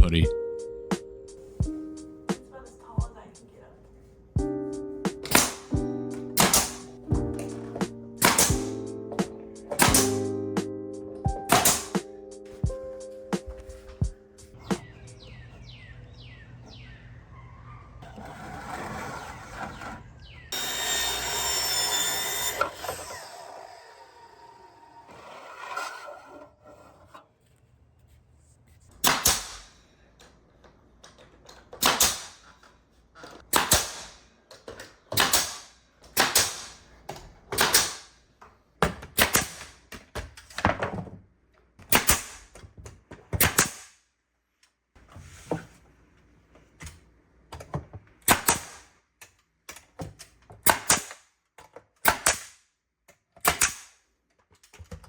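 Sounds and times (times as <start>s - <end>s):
nails driven into wood: 5.2s - 5.8s, 6.4s - 6.9s, 8.2s - 8.7s, 9.7s - 10.2s, 11.5s - 12.0s, 29.0s - 29.8s, 31.1s - 32.8s, 33.4s - 38.2s, 38.8s - 41.0s, 41.8s - 44.0s, 48.2s - 55.0s.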